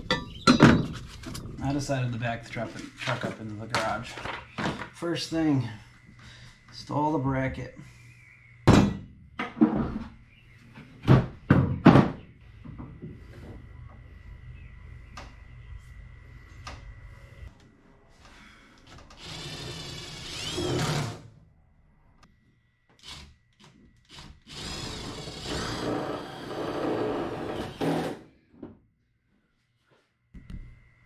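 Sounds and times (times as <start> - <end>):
power drill driving screws: 19.2 - 21.3, 24.1 - 28.2.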